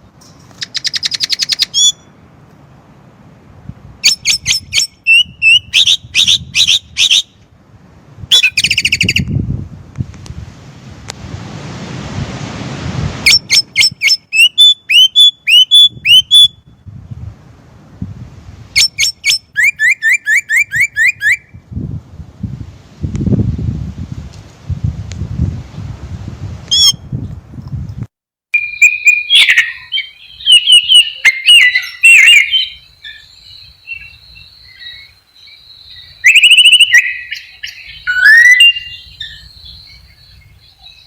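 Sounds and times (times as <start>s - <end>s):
blackbird calling: 0.5s - 2.1s, 4.0s - 7.4s, 8.3s - 9.3s, 13.3s - 16.7s, 18.8s - 21.6s, 28.6s - 41.0s.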